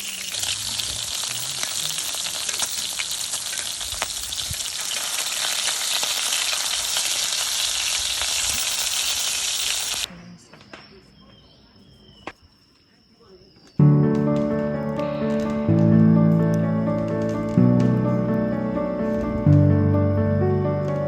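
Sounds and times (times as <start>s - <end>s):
food sizzling in a hot pan: 0.0s - 10.1s.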